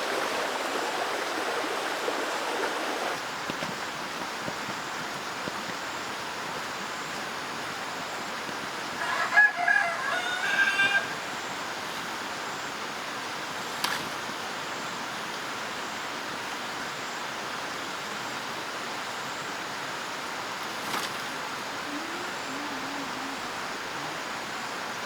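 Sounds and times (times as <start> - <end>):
steady background hiss: 0.0 - 25.0
rooster crowing: 9.0 - 11.5.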